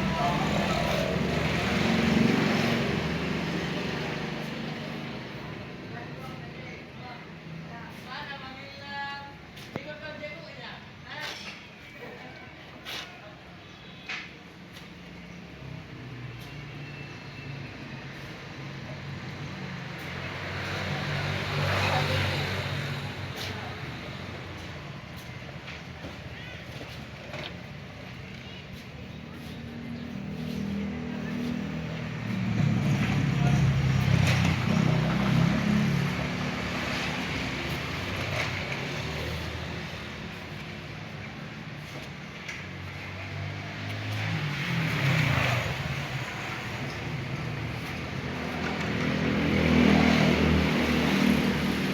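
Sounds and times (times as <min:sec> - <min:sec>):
vehicle engine passing: 0:00.0 - 0:05.7, 0:18.2 - 0:24.7, 0:29.2 - 0:41.1, 0:42.7 - 0:51.9.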